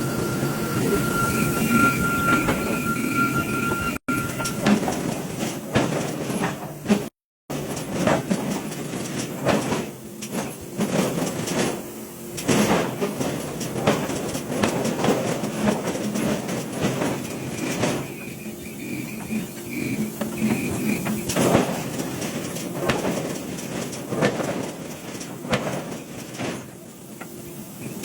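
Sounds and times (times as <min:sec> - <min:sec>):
steady machine whine: 0:00.0 - 0:05.4, 0:07.5 - 0:28.0
machinery rumble: 0:00.0 - 0:28.0
clanks and knocks: 0:03.6 - 0:11.8, 0:12.4 - 0:28.0.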